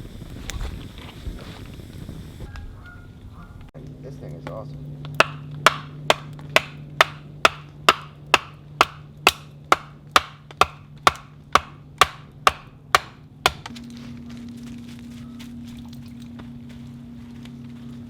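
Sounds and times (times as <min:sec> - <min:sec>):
low steady hum: 0:00.0 - 0:18.0
wood chopping strikes: 0:04.4 - 0:13.8.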